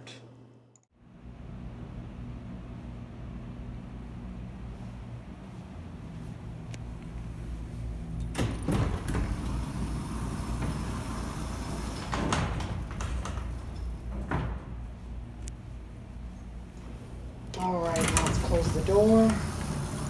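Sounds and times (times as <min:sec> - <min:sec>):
low machine hum: 0:01.0 - 0:20.0
elevator doors clanking and banging: 0:05.3 - 0:20.0.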